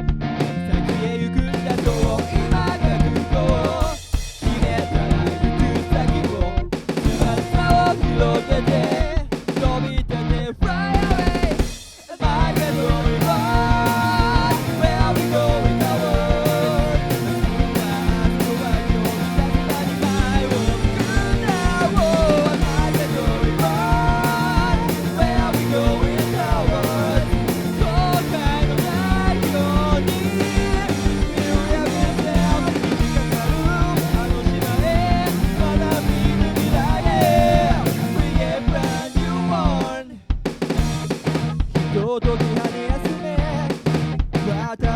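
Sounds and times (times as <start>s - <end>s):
bass drum beat: 0.0s - 44.9s
instrumental rock music: 0.0s - 44.9s.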